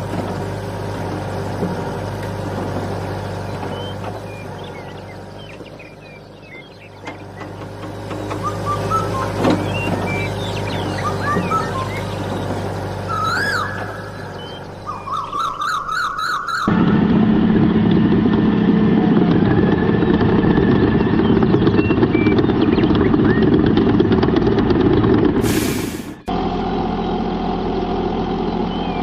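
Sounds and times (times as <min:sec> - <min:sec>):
warbling siren-like tone: 0:13.1 - 0:16.9.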